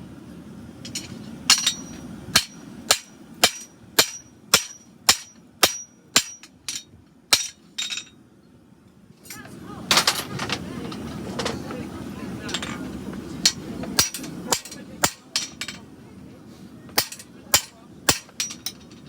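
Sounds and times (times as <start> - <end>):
hammer striking steel on anvil: 0.9 - 8.1, 13.5 - 15.8, 17.0 - 19.0.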